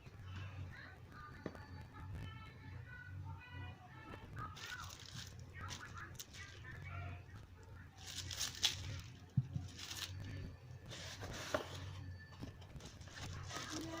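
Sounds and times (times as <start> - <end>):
steady low hum: 0.0 - 14.0
packaging rustling and tearing: 4.6 - 6.6, 8.0 - 10.3.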